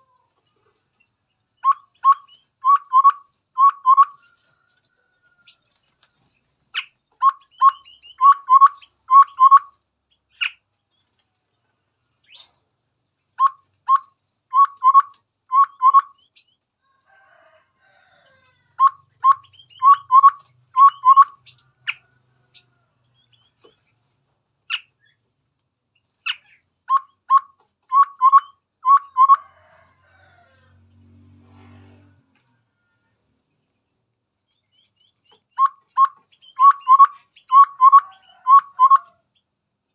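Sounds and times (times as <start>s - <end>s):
bird singing whistled notes: 1.6s - 4.2s, 6.8s - 10.6s, 13.4s - 16.4s, 18.8s - 22.0s, 26.3s - 29.6s, 34.8s - 39.2s.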